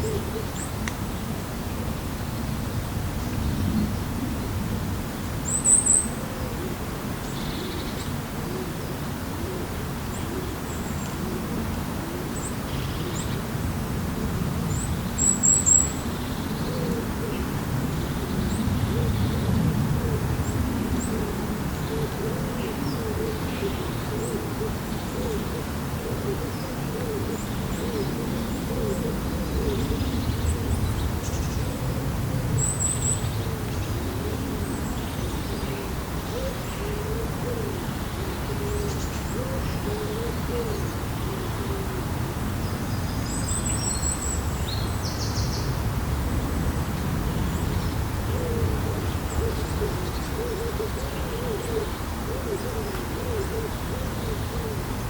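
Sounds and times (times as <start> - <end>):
birds hooting: 0.0 - 0.8, 14.7 - 45.8, 47.3 - 55.0.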